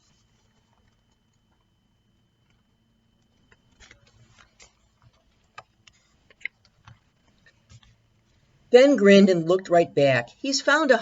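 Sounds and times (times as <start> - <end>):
book pages turning: 0.0 - 1.7, 2.5 - 8.4.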